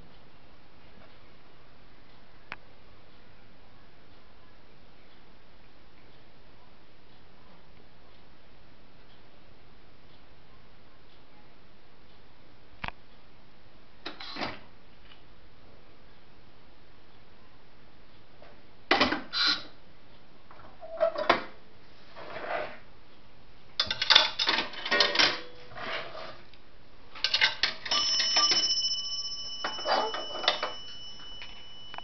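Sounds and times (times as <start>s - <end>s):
pay phone metallic clicks: 27.2s - 32.0s
phone bell ringing: 27.9s - 32.0s.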